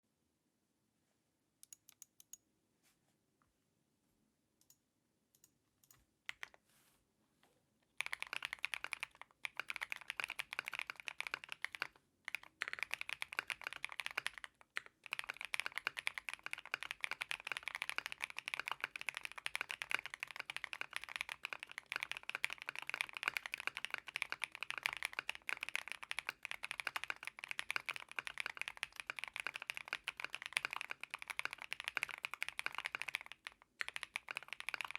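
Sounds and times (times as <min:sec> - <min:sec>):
mechanical keyboard typing: 0:08.0 - 0:34.9.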